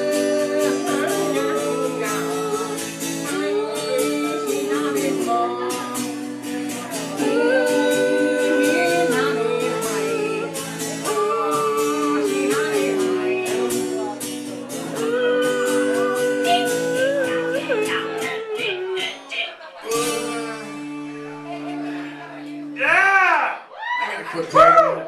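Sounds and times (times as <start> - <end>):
sliding melody line: 0.0 - 19.3, 19.9 - 22.4
strummed guitar: 0.0 - 23.6.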